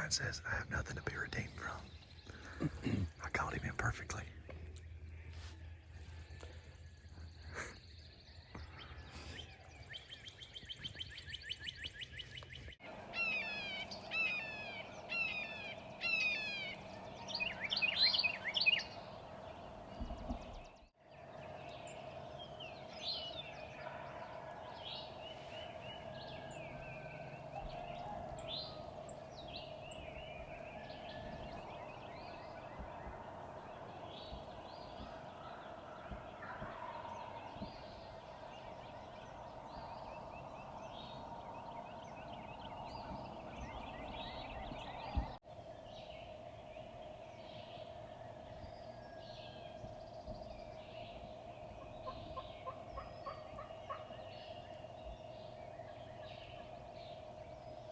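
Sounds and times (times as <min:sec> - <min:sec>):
birds chirping and singing: 0:00.0 - 0:57.9
steady drone: 0:21.2 - 0:53.2.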